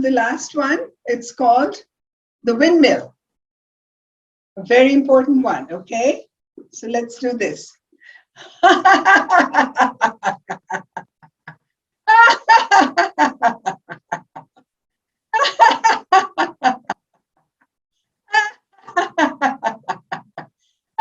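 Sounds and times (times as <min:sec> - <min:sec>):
person laughing ha ha ha: 0:08.6 - 0:14.6, 0:15.4 - 0:17.0, 0:18.3 - 0:20.5.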